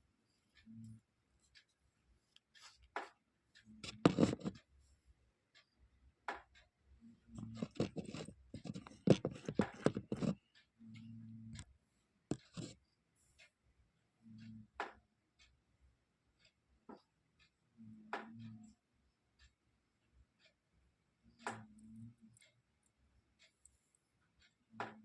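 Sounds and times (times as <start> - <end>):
handling clicks taps and scrapes: 0.5 - 3.2, 3.8 - 4.7, 7.2 - 10.6, 12.3 - 12.8.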